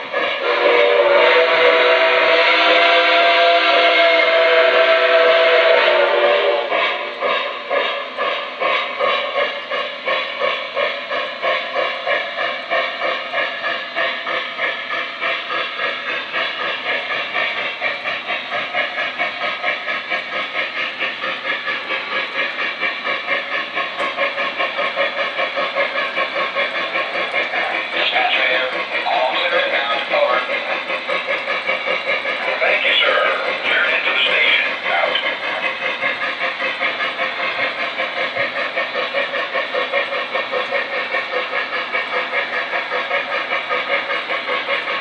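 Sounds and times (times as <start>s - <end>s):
model train steam whistle: 0.0s - 8.0s
model train steam chuffing: 0.0s - 45.0s.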